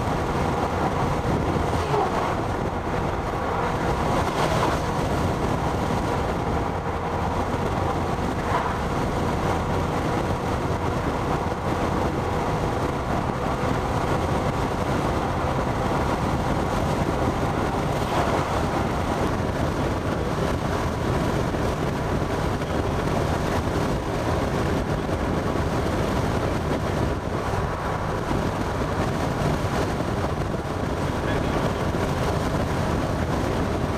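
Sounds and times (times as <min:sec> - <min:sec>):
vehicle road and engine noise: 0:00.0 - 0:33.9.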